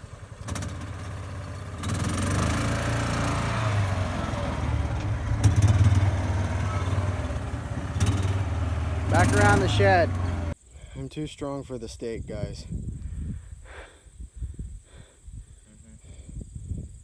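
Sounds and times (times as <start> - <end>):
small vehicle engine running: 0.0 - 10.6.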